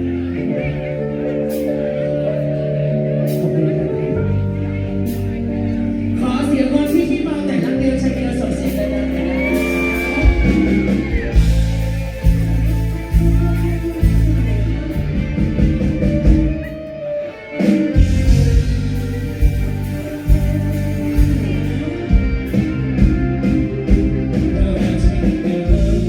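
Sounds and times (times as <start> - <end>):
strong bass line: 0.0 - 17.1, 17.7 - 26.0
live band music: 0.0 - 26.0
person singing: 24.3 - 26.0.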